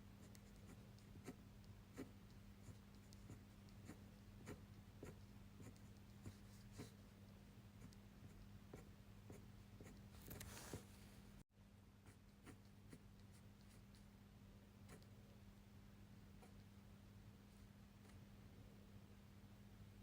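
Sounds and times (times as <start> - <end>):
pen scratching on paper: 0.2 - 7.0, 12.1 - 13.8.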